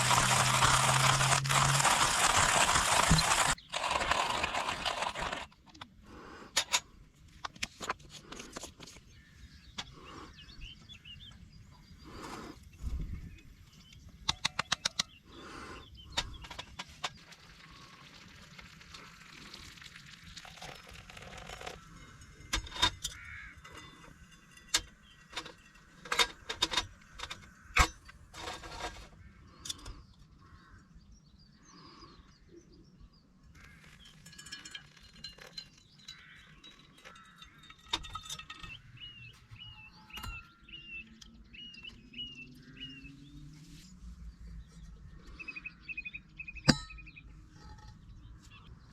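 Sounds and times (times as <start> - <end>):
sharp clicks and knocks: 0.0 - 5.9, 13.9 - 15.2
bird chirping: 9.0 - 16.6, 35.2 - 48.9.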